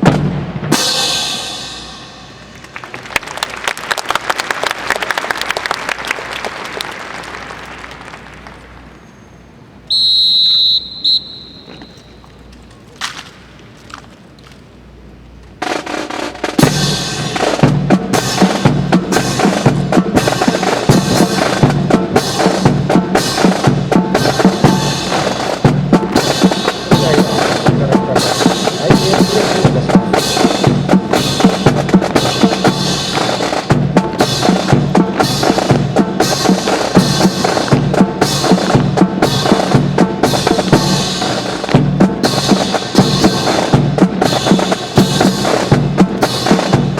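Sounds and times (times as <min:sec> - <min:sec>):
marching snare and bass drums: 0:00.0 - 0:02.2, 0:15.5 - 0:46.9.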